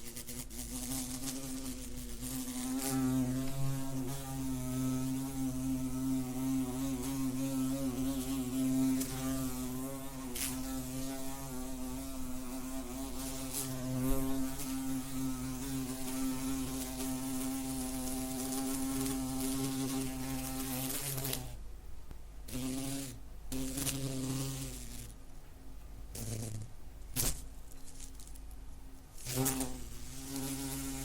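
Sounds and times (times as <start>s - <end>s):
wasp wings buzzing: 0.0s - 21.6s, 22.5s - 25.2s, 26.1s - 27.5s, 29.2s - 31.0s.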